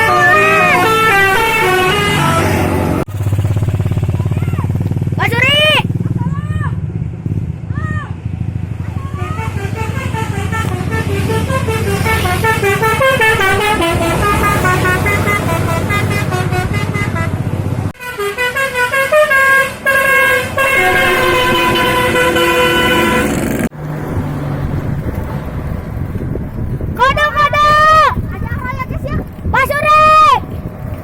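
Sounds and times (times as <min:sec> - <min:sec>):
multi-tone air horn melody: 0:00.0 - 0:03.1, 0:09.0 - 0:23.7
bus engine rumble: 0:00.0 - 0:31.0.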